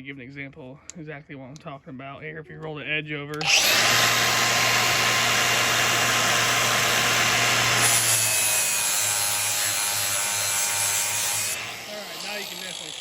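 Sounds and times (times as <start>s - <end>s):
angle grinder grinding steel: 3.4s - 13.0s.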